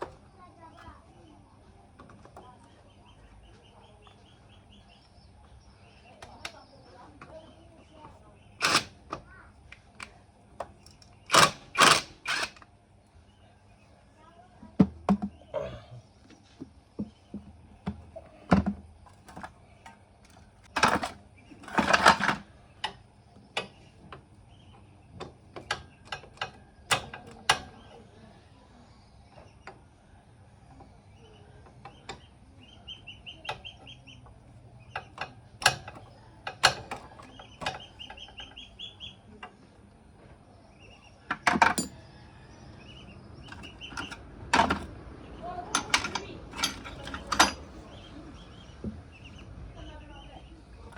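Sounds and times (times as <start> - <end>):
hand tools clicking on metal: 8.6 - 8.9, 10.7 - 12.6, 25.6 - 27.8, 34.9 - 38.6, 41.3 - 42.0, 43.4 - 45.0, 45.7 - 48.0.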